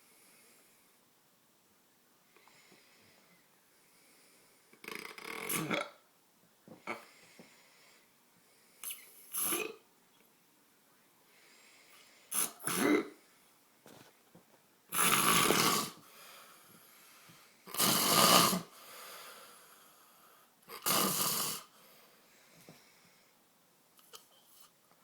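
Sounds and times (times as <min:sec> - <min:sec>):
man snoring loudly: 0:15.0 - 0:16.0, 0:17.7 - 0:18.7, 0:20.7 - 0:21.7.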